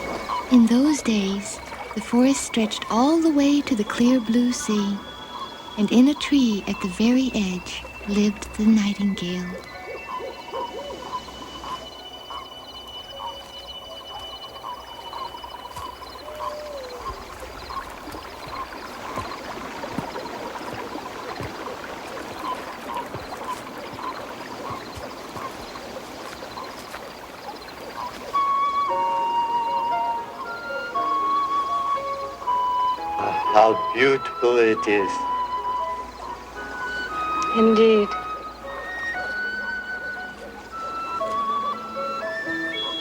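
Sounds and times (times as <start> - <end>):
slow melody of high notes: 0.0 - 16.8, 28.4 - 43.0
water rushing: 0.0 - 43.0.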